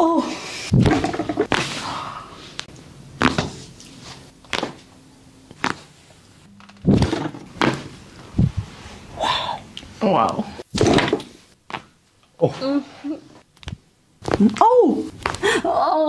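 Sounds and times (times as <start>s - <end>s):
body thuds: 3.2s - 4.9s, 5.5s - 5.9s, 6.8s - 8.7s.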